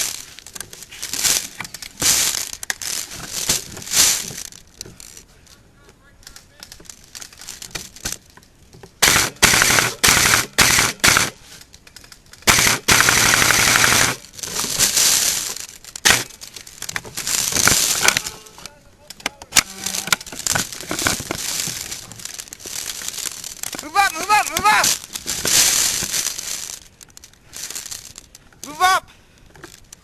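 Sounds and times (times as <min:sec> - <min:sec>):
airsoft guns firing bursts: 0:09.0 - 0:11.4, 0:12.4 - 0:14.2, 0:16.0 - 0:16.3.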